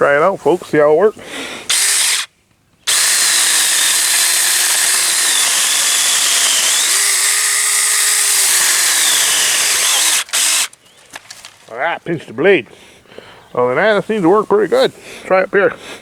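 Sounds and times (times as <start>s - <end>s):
electric chainsaw cutting wood: 1.7s - 2.3s, 2.9s - 10.8s.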